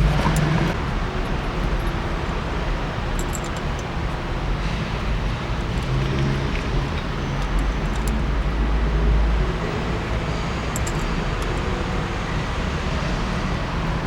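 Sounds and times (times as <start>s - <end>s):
parking garage rumble and hiss: 0.0s - 14.0s
traffic noise: 0.0s - 14.0s
light clicks: 3.2s - 3.9s, 10.7s - 11.6s.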